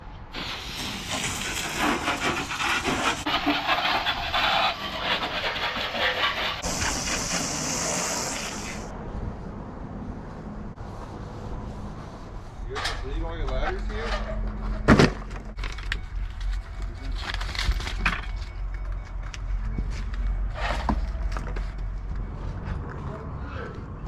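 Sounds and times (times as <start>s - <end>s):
loud crackling spray hiss: 0.3s - 4.7s, 5.5s - 8.9s.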